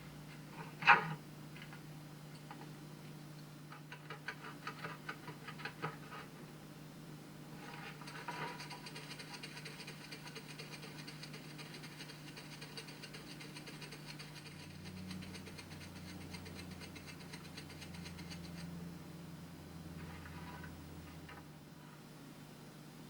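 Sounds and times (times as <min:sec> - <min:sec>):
low steady hum: 0:00.0 - 0:23.0
hedgehog scratching itself: 0:07.6 - 0:18.8.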